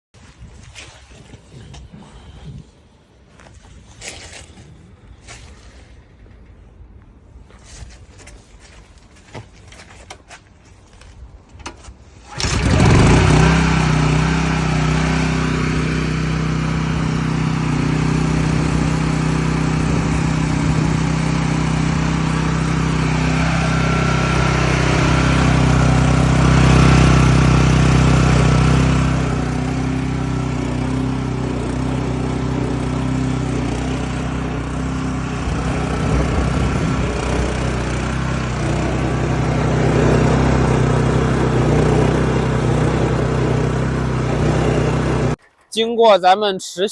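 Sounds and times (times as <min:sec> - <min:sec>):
pressure washer running: 0:12.3 - 0:45.4.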